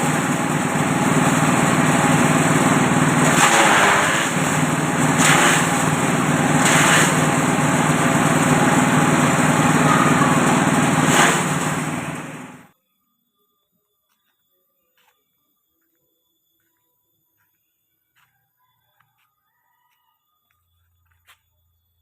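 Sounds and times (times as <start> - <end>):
chopper machine engine drone: 0.0 - 12.7.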